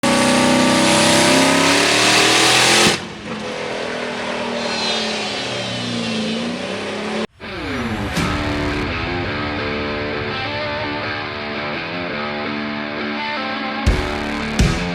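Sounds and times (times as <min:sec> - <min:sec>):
diesel truck engine at full throttle: 0:00.0 - 0:10.2
guitar music: 0:07.4 - 0:14.9.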